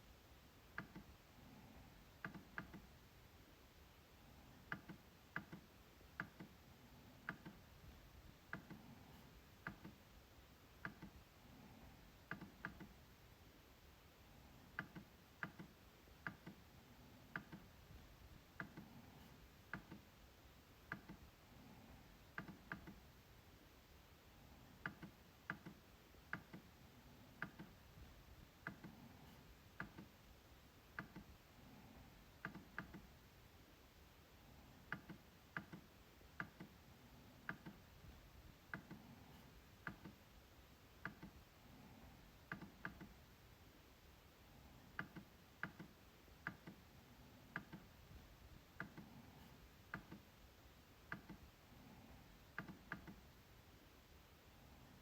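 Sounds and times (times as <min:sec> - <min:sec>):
trackpad clicking: 0:27.4 - 0:27.8.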